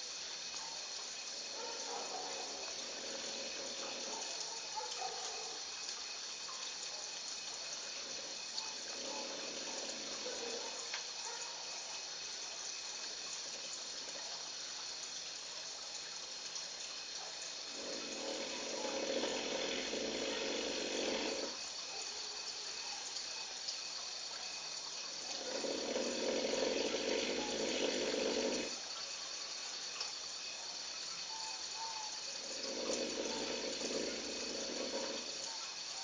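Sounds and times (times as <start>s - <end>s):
steady hiss: 0.0s - 36.0s
lion snoring: 1.5s - 4.4s, 7.8s - 10.8s, 17.6s - 21.6s, 25.1s - 28.8s, 32.2s - 35.4s.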